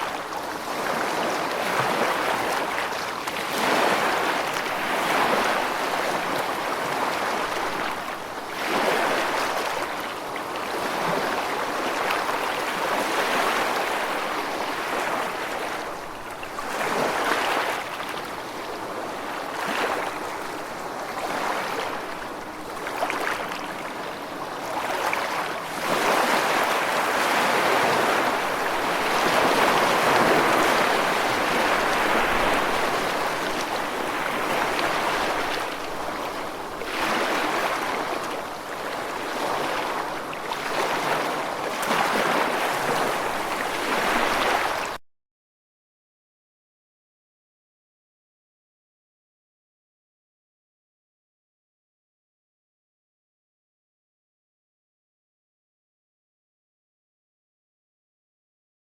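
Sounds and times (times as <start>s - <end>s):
small waves washing on beach: 0.0s - 45.0s.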